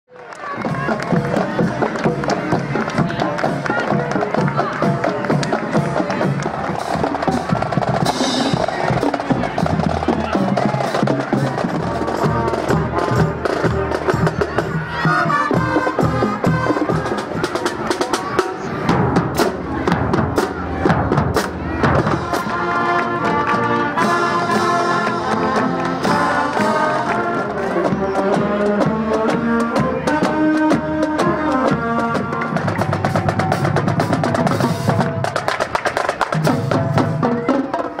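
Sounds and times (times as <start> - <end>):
marching band playing: 0.2 - 38.0
brass melody: 0.6 - 35.4
drum strikes: 0.8 - 26.8.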